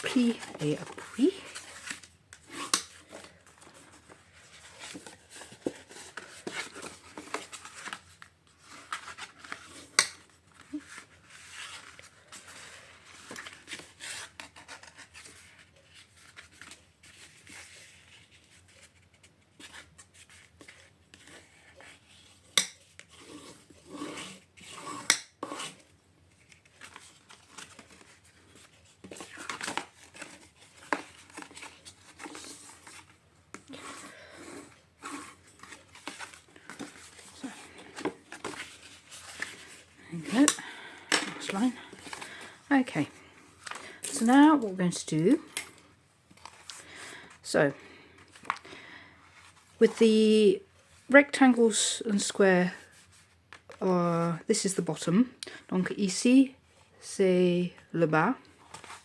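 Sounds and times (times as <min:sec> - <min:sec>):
paper rubbing and scraping: 0:23.1 - 0:25.9, 0:26.6 - 0:40.5.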